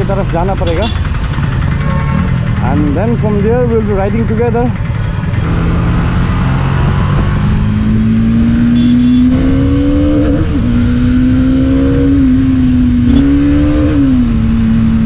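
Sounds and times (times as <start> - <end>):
motorcycle engine revving: 0.0 - 15.0
wind rumbling on microphone: 6.6 - 8.4.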